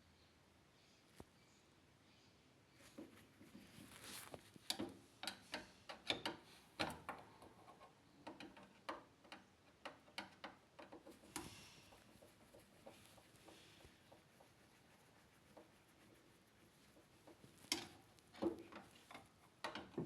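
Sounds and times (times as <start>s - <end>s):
light clicks of small hard parts: 4.6s - 11.6s.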